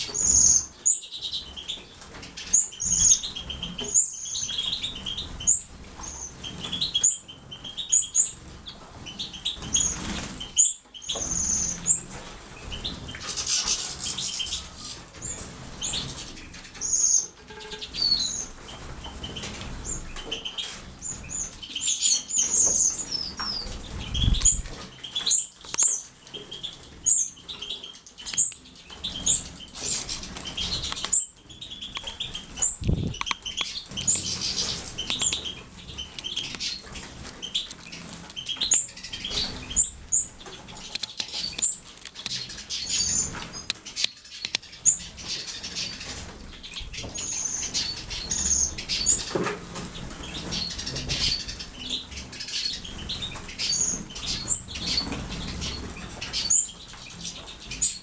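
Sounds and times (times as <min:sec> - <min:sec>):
birds fluttering wings: 0:08.4 - 0:17.2, 0:22.5 - 0:27.1.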